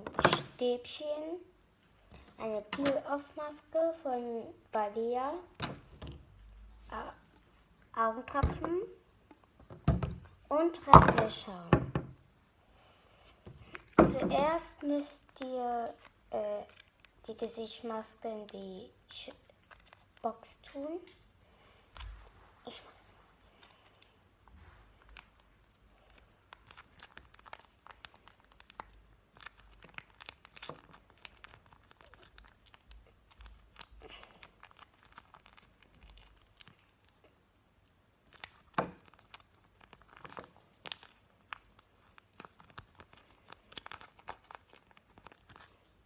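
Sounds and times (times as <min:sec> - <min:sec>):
plastic packaging crinkling: 0:19.4 - 0:20.3, 0:23.5 - 0:37.4, 0:38.2 - 0:46.0.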